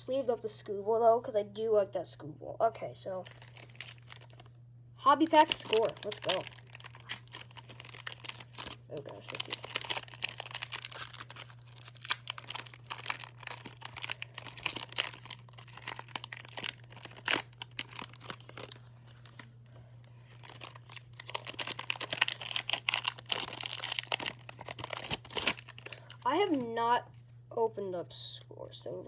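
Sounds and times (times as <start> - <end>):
steady low hum: 0.0 - 29.0
plastic wrapper tearing and crinkling: 3.2 - 4.5, 5.2 - 26.2.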